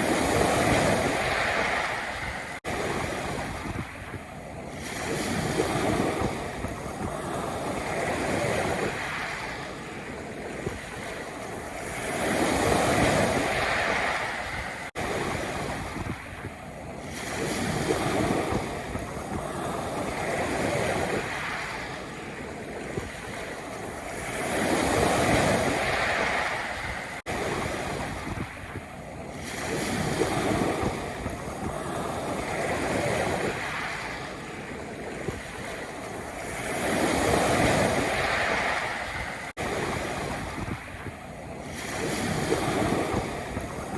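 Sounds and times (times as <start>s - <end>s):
waves breaking on pebble beach: 0.0s - 43.9s.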